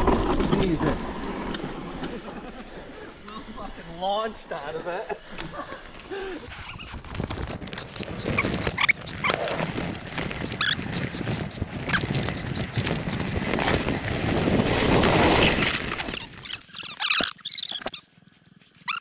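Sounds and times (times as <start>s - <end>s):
bike tyres on dirt: 0.0s - 19.0s
bike squeaks: 5.2s - 19.0s.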